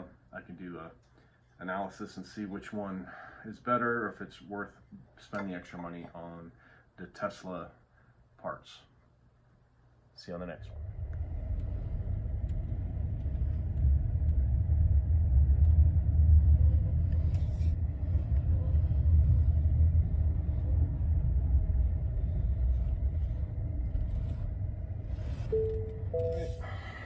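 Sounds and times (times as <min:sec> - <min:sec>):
vehicle rumbling on the move: 0:10.6 - 0:27.0.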